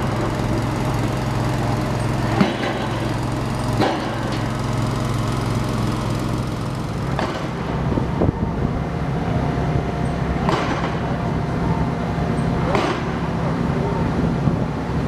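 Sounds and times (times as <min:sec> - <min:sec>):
sharp metallic knocks: 0:00.0 - 0:07.7
engine running: 0:00.0 - 0:15.0.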